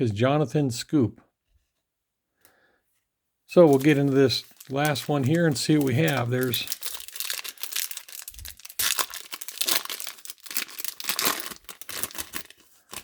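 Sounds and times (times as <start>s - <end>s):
foil wrapper crinkling and tearing: 3.5s - 13.0s.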